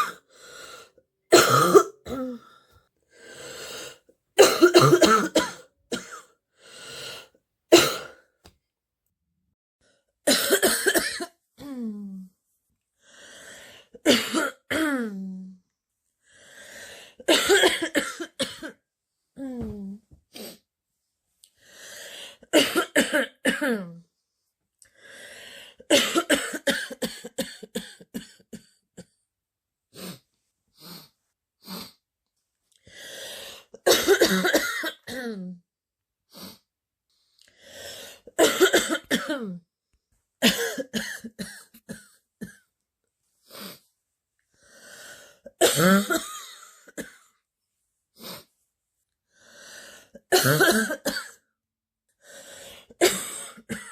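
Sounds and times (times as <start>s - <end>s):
girl coughing: 0.0s - 0.2s, 1.3s - 2.5s, 4.4s - 6.3s, 7.7s - 8.2s, 10.3s - 11.3s, 14.1s - 15.0s, 17.3s - 18.8s, 22.6s - 23.8s, 25.9s - 28.3s, 33.9s - 35.4s, 38.4s - 39.6s, 40.4s - 42.6s, 45.6s - 47.2s, 50.3s - 51.4s, 53.0s - 53.9s.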